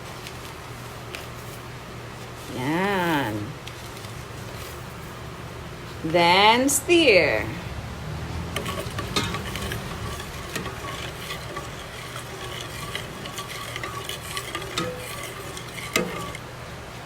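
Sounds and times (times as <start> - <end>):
sauce bubbling: 8.2 - 16.5
utensil scraping a pot: 8.5 - 16.5.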